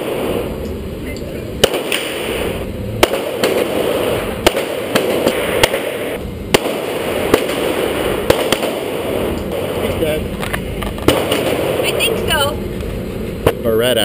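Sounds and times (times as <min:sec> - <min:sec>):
steady background rush: 0:00.0 - 0:14.0
handgun shots: 0:01.6 - 0:02.4.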